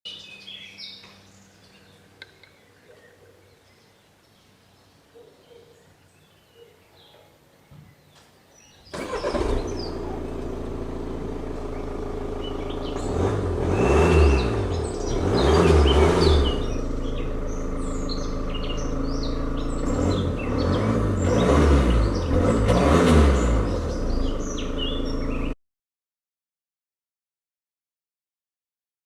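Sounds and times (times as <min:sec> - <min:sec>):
birds chirping: 0:00.1 - 0:25.6
diesel engine idling and revving: 0:08.9 - 0:25.6.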